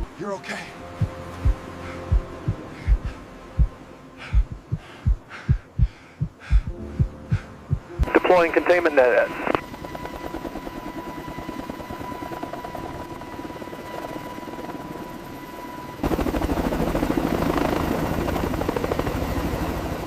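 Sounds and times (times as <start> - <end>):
helicopter rotor chopping: 7.8 - 20.0.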